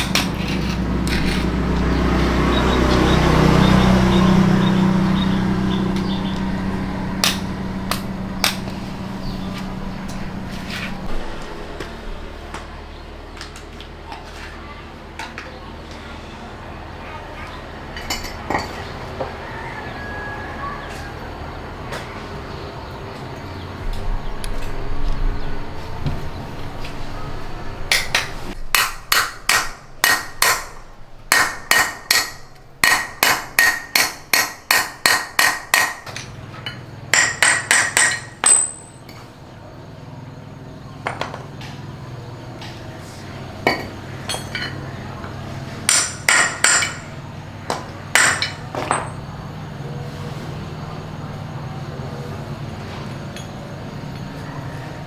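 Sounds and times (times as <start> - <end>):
steady low hum: 0.0 - 13.6, 22.6 - 34.7
metal-on-metal strikes: 27.9 - 39.0.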